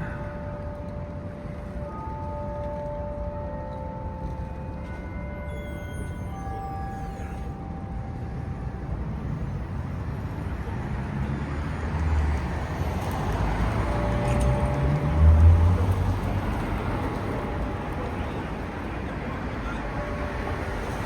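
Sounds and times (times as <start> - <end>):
church bell ringing: 0.0 - 9.0
vehicle engine and tyre rumble: 7.0 - 21.0.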